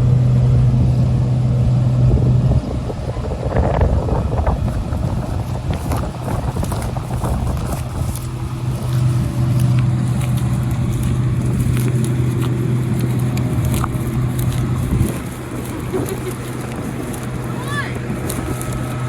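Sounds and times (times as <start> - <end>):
engine humming: 0.0 - 19.0.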